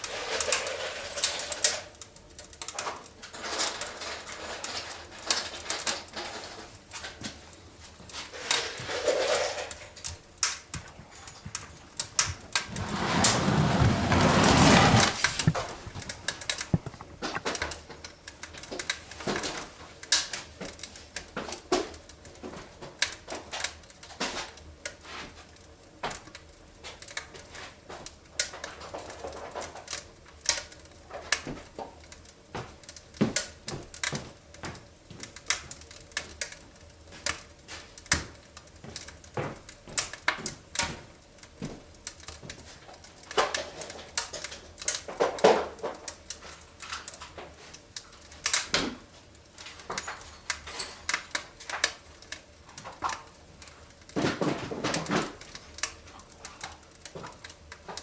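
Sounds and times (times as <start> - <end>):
small clicks and knocks: 0.0 - 7.5, 8.1 - 14.2, 14.9 - 58.0
loud rushing noise: 12.8 - 15.5.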